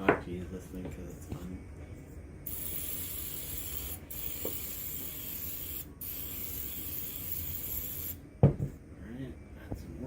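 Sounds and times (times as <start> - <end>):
oil mister spraying hiss: 2.5 - 8.2.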